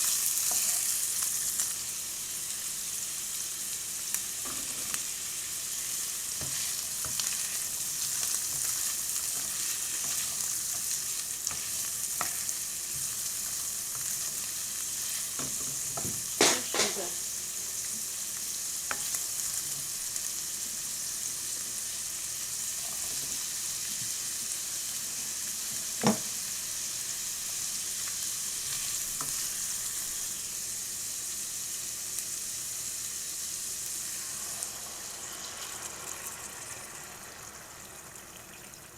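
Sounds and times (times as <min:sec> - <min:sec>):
food sizzling in a hot pan: 0:00.0 - 0:38.9
utensil knocking against pan: 0:15.4 - 0:17.1.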